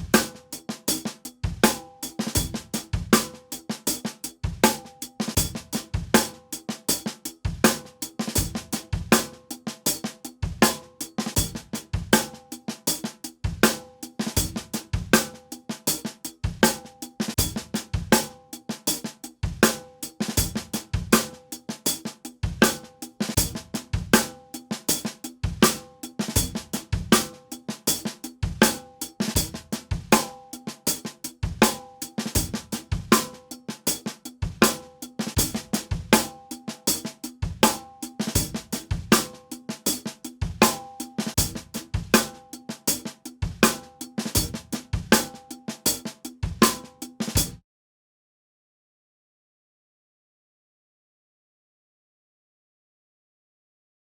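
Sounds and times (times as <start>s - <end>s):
acoustic drum kit groove: 0.0s - 47.6s.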